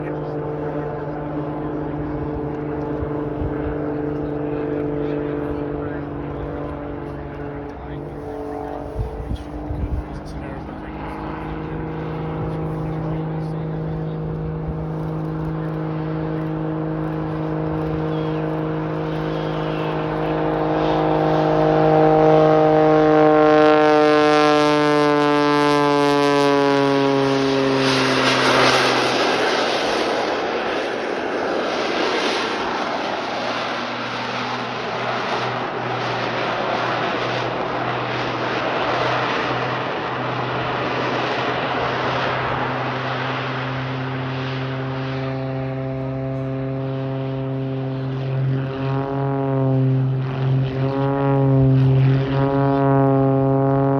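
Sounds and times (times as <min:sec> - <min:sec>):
aircraft engine and propeller: 0:00.0 - 0:53.9.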